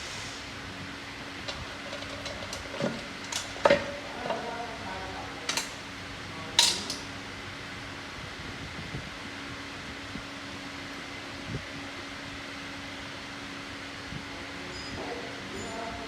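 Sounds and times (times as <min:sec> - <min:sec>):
metal parts clanking: 0:01.5 - 0:04.0, 0:05.5 - 0:05.8, 0:06.6 - 0:07.0.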